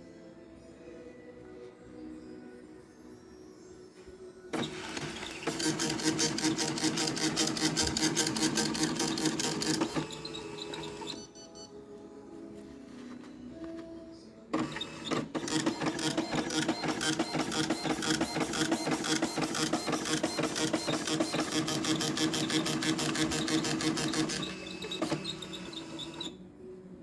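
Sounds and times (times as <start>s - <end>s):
printer motor hum: 4.6s - 11.2s, 14.6s - 26.4s
dot matrix printer chatter: 4.6s - 11.3s, 14.5s - 26.4s.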